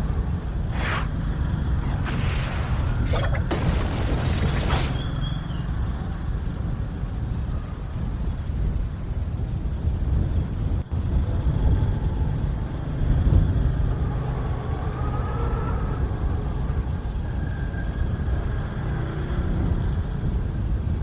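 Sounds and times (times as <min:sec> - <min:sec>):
faint wavering whistles: 0:04.4 - 0:08.5, 0:11.7 - 0:20.1.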